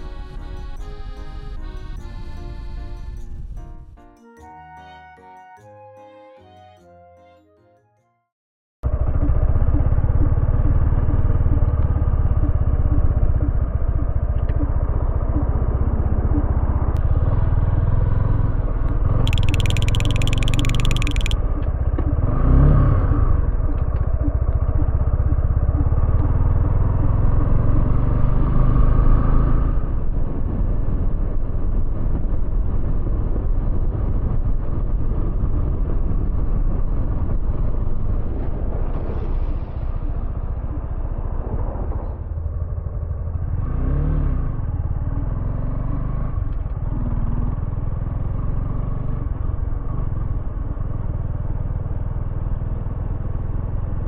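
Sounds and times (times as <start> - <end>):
motorcycle engine running: 8.9 - 18.4, 19.1 - 29.1
sound rising and falling in pitch: 19.3 - 21.4.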